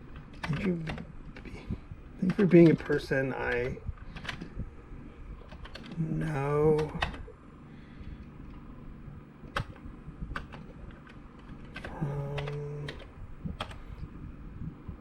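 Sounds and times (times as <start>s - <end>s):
keyboard keys pressed: 9.5s - 13.9s.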